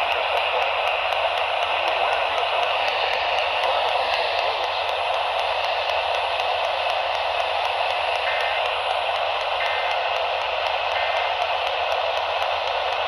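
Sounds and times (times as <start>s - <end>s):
faint radio tones: 0.0s - 7.0s
radio static hiss: 0.1s - 6.8s.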